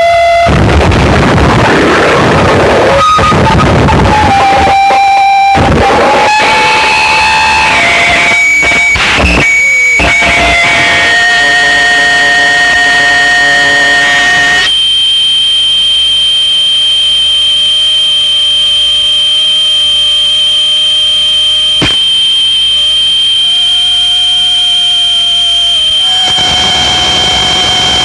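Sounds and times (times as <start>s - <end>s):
electronic feedback tones: 0.0s - 28.0s
sharp click: 21.8s - 22.1s.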